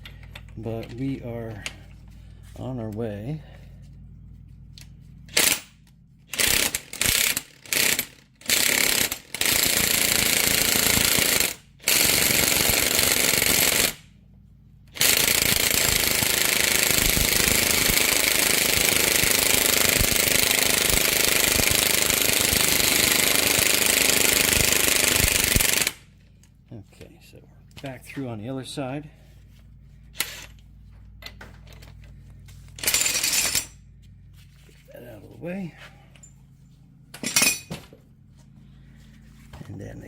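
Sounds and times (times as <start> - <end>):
impact wrench hammering: 5.3 - 14.0, 14.9 - 26.1, 30.2 - 30.6, 32.8 - 33.8, 37.1 - 37.9.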